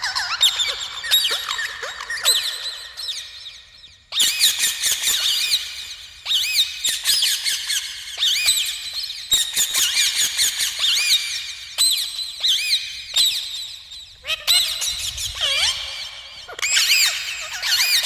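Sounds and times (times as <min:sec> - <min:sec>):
parrots chirping: 0:14.2 - 0:18.0.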